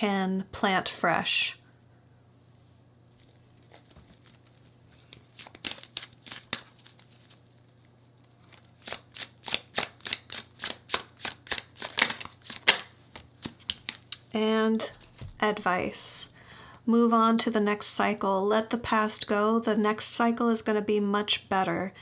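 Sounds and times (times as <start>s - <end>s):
cards being shuffled: 3.2s - 14.2s
crisp card snaps: 3.2s - 14.2s.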